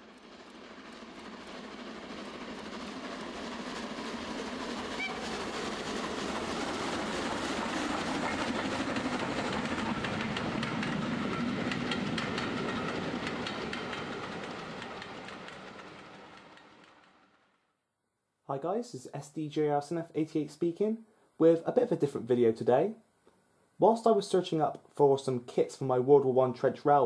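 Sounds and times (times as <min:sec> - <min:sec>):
train rumbling on track: 0:00.0 - 0:17.6
wheels clicking over rails: 0:01.2 - 0:17.3.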